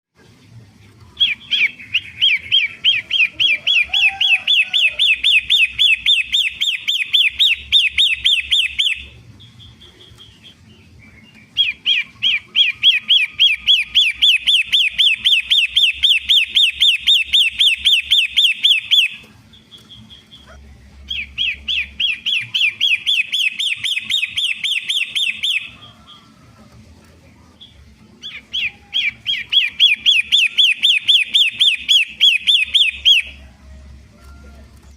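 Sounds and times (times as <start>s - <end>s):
shrike singing shrill notes: 1.3s - 9.2s, 11.6s - 19.4s, 21.1s - 25.8s, 28.3s - 33.5s.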